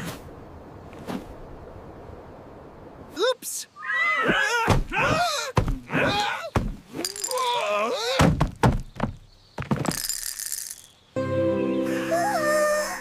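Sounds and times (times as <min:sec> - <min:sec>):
cartoon thuds and knocks: 0:08.2 - 0:09.8.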